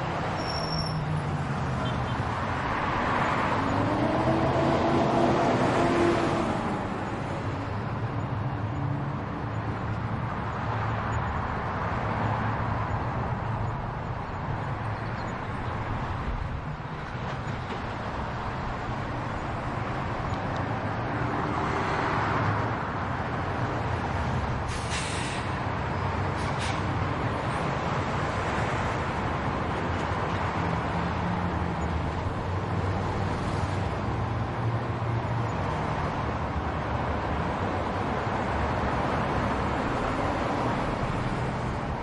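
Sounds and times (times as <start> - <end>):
road noise: 0.0 - 42.0
short hisses: 24.7 - 25.5.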